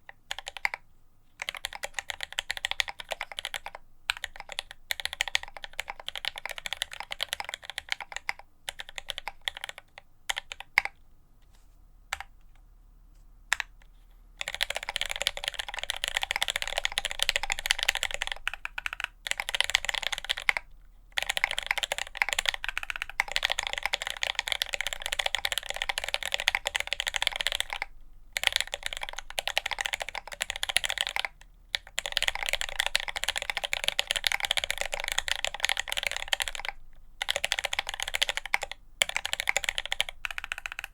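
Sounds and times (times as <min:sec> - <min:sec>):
typing on mechanical keyboard: 0:00.0 - 0:00.8, 0:01.4 - 0:11.0, 0:14.4 - 0:40.9.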